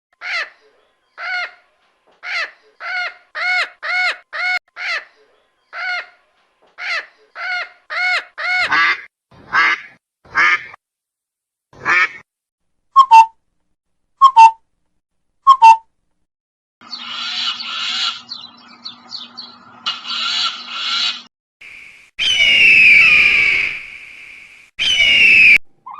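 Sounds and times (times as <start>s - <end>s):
duck quacking: 8.5s - 10.8s, 11.8s - 12.2s
sharp bird calls: 16.8s - 25.9s.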